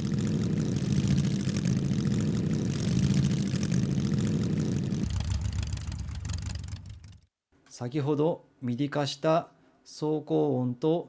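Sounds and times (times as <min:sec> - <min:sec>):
speeder bike engine hum: 0:00.0 - 0:07.2.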